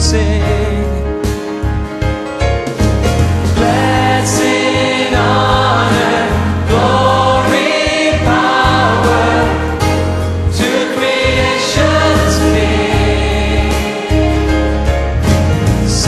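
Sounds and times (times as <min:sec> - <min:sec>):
instrumental accompaniment: 0:00.0 - 0:16.0
choir singing a hymn: 0:03.6 - 0:15.0.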